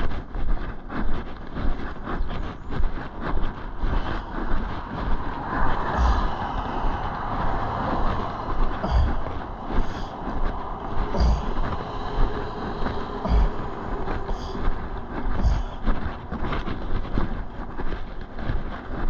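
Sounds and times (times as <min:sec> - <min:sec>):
steady traffic rumble: 0:00.0 - 0:19.0
vehicle passing: 0:03.0 - 0:18.1
low thumps: 0:03.9 - 0:17.8.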